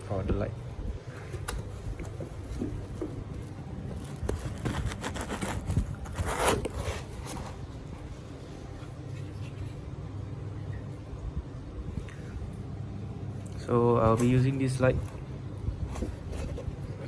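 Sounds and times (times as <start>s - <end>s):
steady low hum: 0.0s - 17.0s
packaging scraping and rustling: 1.2s - 8.0s.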